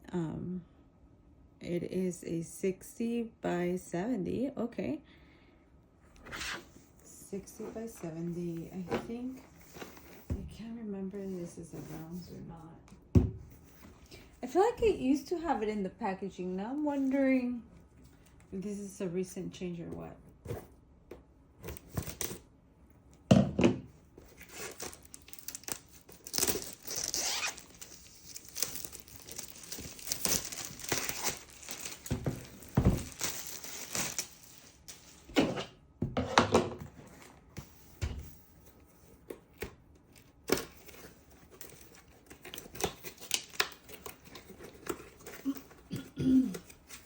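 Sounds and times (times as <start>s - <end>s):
packaging tearing and crinkling: 24.3s - 35.2s, 40.2s - 45.8s.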